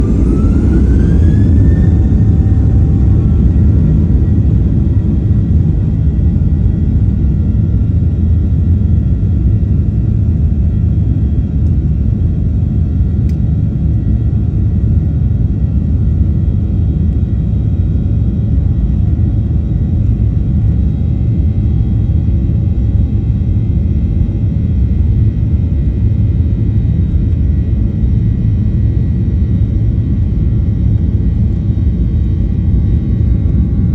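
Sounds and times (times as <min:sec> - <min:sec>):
airplane engines roaring: 0:00.0 - 0:33.9.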